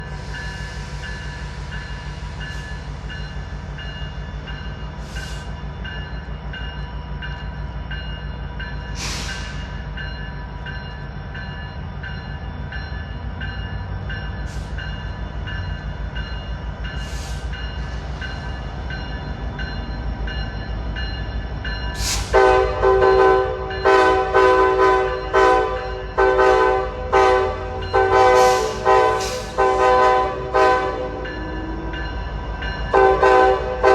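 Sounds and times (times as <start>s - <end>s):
diesel locomotive rumbling: 0.0s - 33.9s
train air horn blasts: 22.0s - 31.3s, 32.9s - 33.9s.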